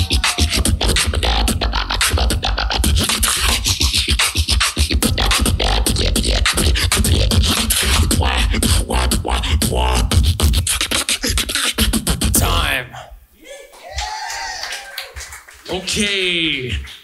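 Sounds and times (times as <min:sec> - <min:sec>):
heavy bass: 0:00.0 - 0:03.8, 0:04.9 - 0:10.6, 0:12.0 - 0:13.1
beatboxing into a microphone: 0:00.0 - 0:13.1, 0:15.8 - 0:17.0.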